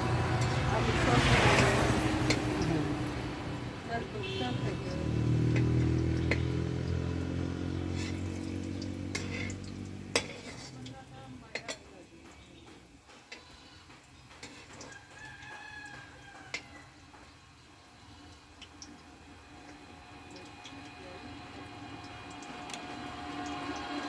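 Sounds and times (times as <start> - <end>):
rooster crowing: 14.8 - 17.0.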